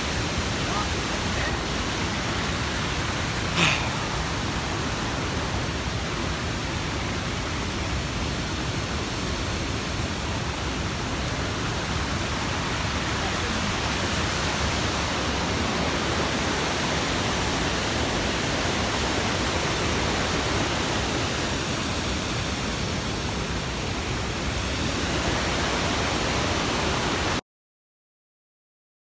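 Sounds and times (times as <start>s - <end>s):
waterfall rushing: 0.0s - 27.4s.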